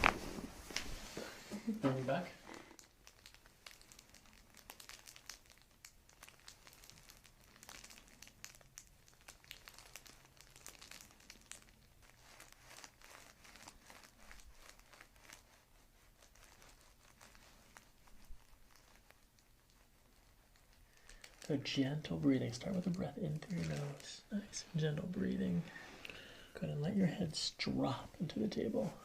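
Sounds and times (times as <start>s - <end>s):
hands rustling over clothing: 0.0s - 2.8s, 12.1s - 26.0s.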